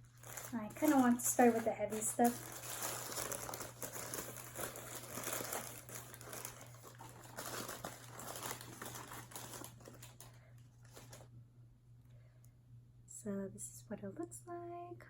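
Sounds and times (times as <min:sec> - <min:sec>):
paper wrapper crinkling: 0:00.0 - 0:11.3.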